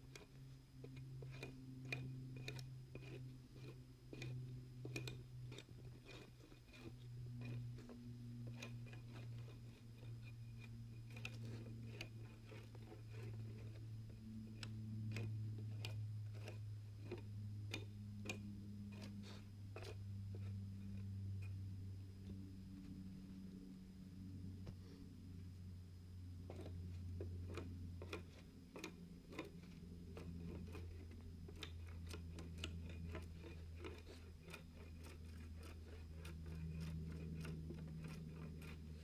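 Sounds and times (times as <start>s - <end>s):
low steady hum: 0.0s - 39.0s
bark being stripped off wood: 0.1s - 21.6s, 26.5s - 39.0s.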